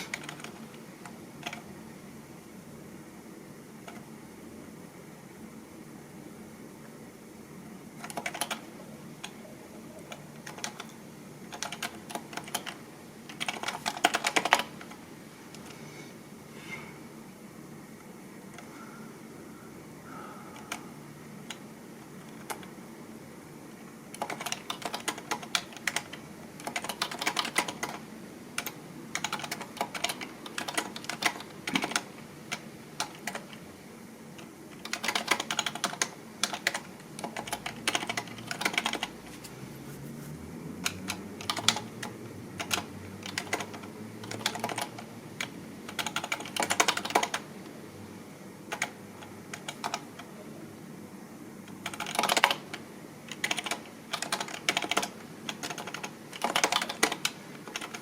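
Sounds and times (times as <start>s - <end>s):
computer keyboard typing: 0.0s - 1.7s, 3.8s - 4.1s, 8.0s - 15.0s, 20.1s - 20.8s, 21.4s - 22.8s, 24.1s - 33.6s, 34.4s - 39.2s, 40.8s - 47.5s, 48.6s - 50.3s, 51.7s - 58.0s.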